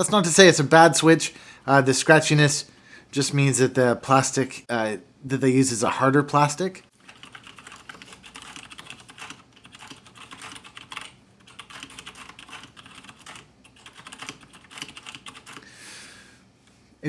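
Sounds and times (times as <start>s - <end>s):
mechanical keyboard typing: 7.0s - 15.6s.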